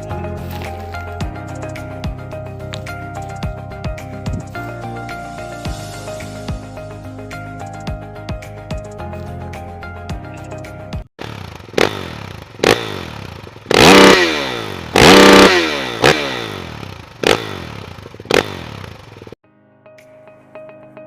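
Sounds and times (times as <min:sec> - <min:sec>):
dirt bike engine revving: 0:11.2 - 0:19.4.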